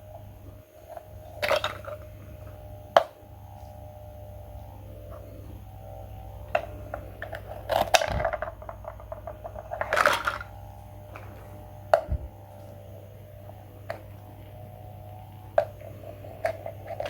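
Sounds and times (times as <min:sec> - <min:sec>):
small hard objects clinking: 0:06.5 - 0:11.6.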